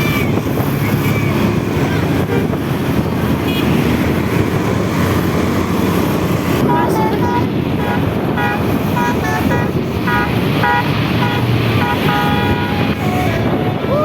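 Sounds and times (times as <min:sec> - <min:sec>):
engine and traffic rumble: 0:00.0 - 0:14.0
multi-tone air horn melody: 0:06.7 - 0:13.0.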